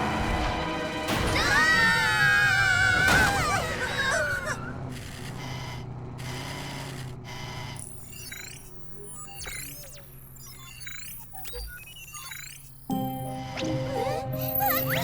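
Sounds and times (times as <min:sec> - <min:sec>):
background music: 0:00.0 - 0:03.8, 0:12.9 - 0:15.0
high cartoon voices screaming: 0:01.3 - 0:04.7.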